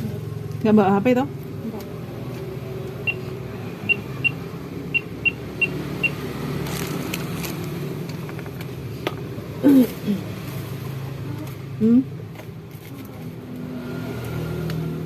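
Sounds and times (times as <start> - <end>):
keypad beeps: 3.0 - 3.2, 3.8 - 6.2.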